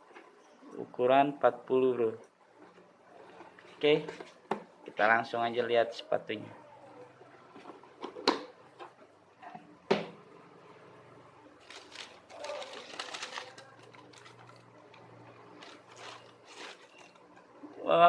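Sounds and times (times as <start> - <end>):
packaging rustling and crinkling: 11.6 - 17.3.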